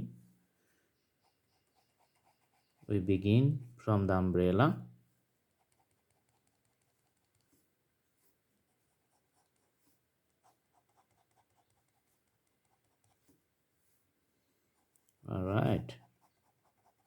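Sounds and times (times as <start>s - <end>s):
pencil scratching on paper: 1.2s - 3.0s, 5.5s - 7.6s, 8.2s - 13.4s, 15.6s - 17.0s.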